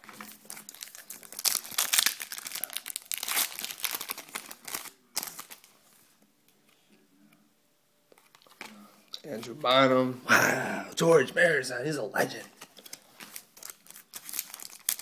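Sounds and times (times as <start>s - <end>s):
wrapper being torn and crinkled: 0.0s - 5.7s, 12.8s - 15.0s.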